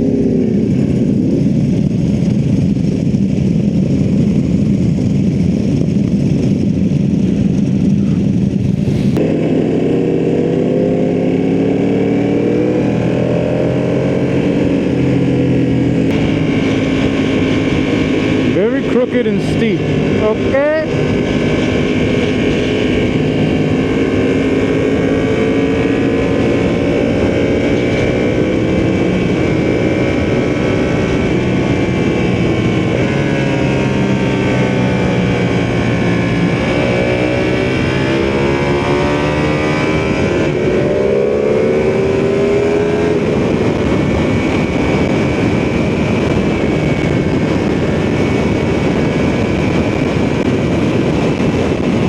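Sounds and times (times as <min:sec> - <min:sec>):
motorcycle engine and exhaust: 0:00.0 - 0:52.0
wind rush: 0:00.0 - 0:52.0.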